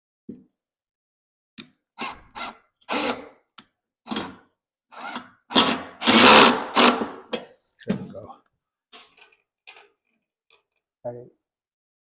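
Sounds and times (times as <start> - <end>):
power drill driving screw into wood: 2.0 - 3.4, 4.1 - 7.3.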